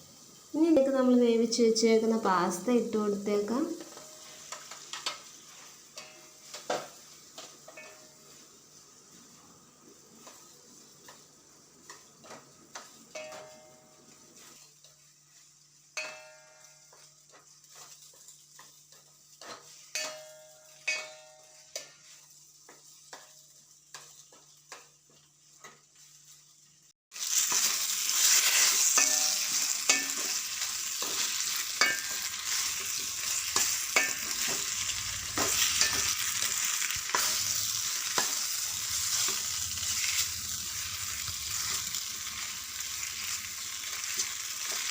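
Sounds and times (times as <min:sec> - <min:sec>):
loud frying sizzle: 0:00.0 - 0:44.9
metal spoon clinking in a pan: 0:13.1 - 0:13.8, 0:16.0 - 0:17.1, 0:18.6 - 0:21.9, 0:28.4 - 0:39.4.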